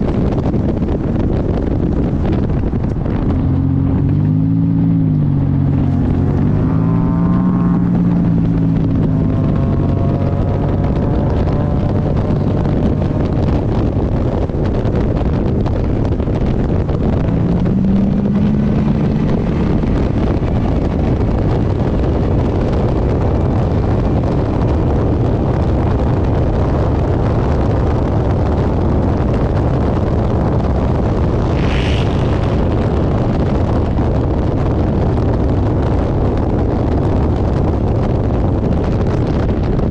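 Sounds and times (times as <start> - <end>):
race car engine: 0.0 - 39.8
heavy wind noise: 0.0 - 39.9.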